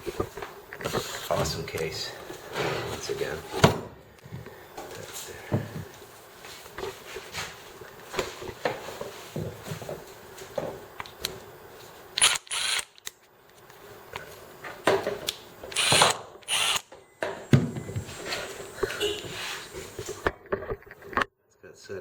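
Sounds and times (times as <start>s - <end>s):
impact wrench running: 12.2s - 13.1s, 15.7s - 16.9s.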